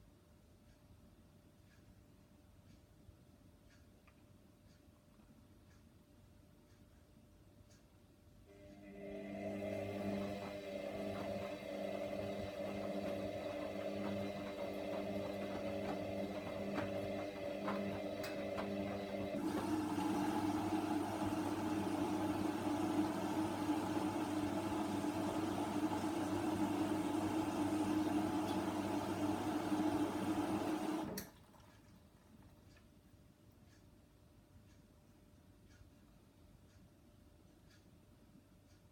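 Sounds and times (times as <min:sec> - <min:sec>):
washing machine running: 0:08.5 - 0:32.7.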